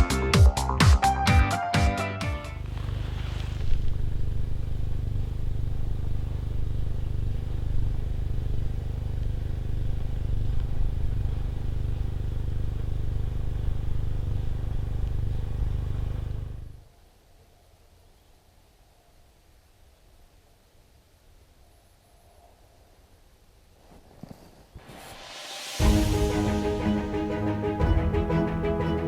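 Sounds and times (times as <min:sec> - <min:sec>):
vehicle engine and road noise: 0:02.6 - 0:16.8.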